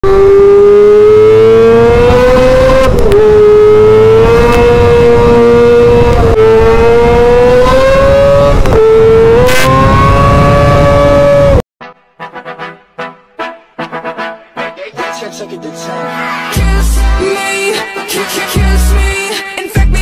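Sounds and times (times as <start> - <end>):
motorcycle engine revving high: 0.0 - 11.6.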